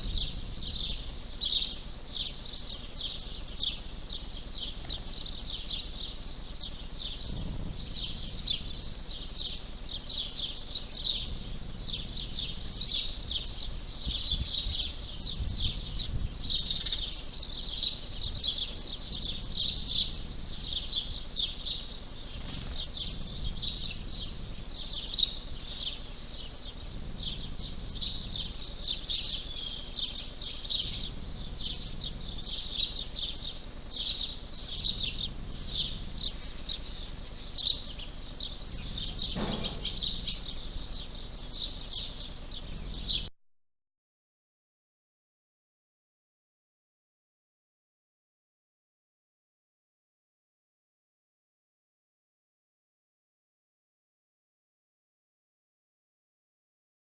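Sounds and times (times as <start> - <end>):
sparrows chirping: 0.0 - 43.3.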